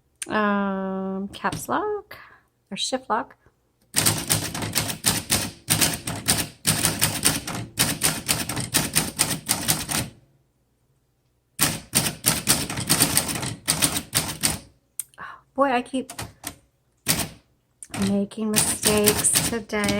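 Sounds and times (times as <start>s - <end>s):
manual typewriter typing: 3.9s - 10.2s, 11.6s - 14.7s, 16.0s - 19.9s.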